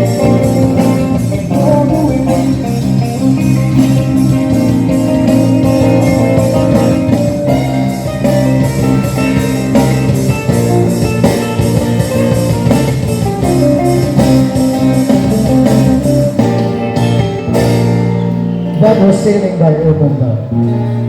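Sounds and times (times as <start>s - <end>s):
live rock band playing: 0.0s - 21.0s.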